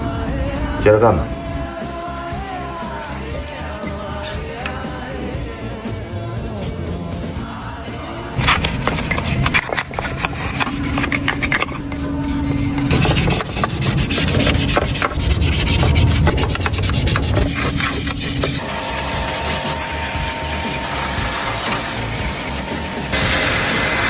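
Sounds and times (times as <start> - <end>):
scraping and rubbing strokes: 6.5 - 20.9.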